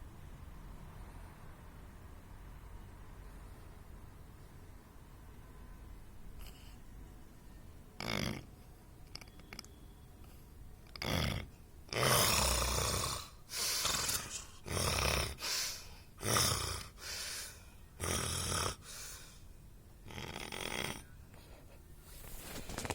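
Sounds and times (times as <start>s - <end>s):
quiet breathing: 0.8s - 1.8s, 15.3s - 16.2s, 16.9s - 18.0s, 18.7s - 19.6s
person snoring: 8.0s - 8.5s, 11.0s - 19.4s, 20.1s - 21.1s.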